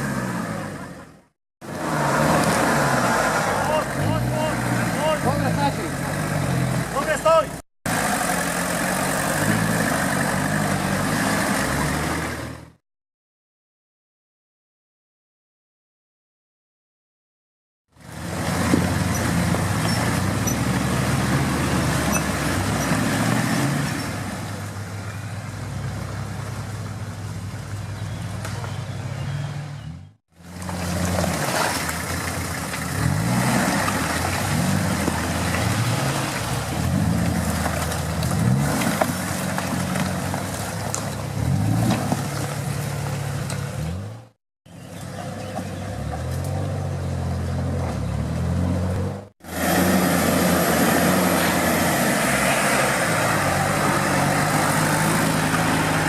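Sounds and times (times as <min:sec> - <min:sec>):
engine revving: 0:00.0 - 0:12.8, 0:18.0 - 0:24.8, 0:28.4 - 0:56.0.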